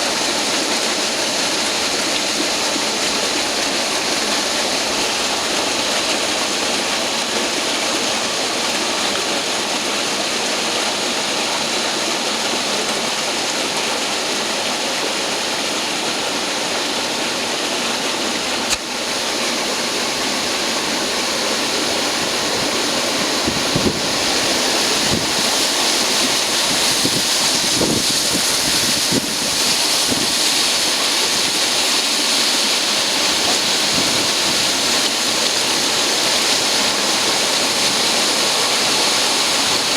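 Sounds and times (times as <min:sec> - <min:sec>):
sharp click: 0:18.7 - 0:18.9.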